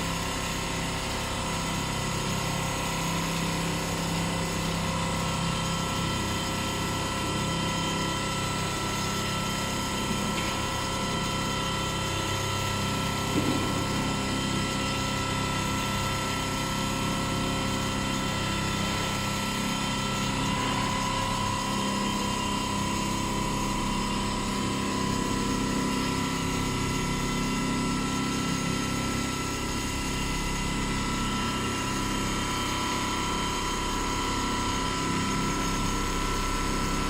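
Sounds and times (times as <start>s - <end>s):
quilting machine humming: 0.1s - 37.0s
machine knock: 13.2s - 14.8s.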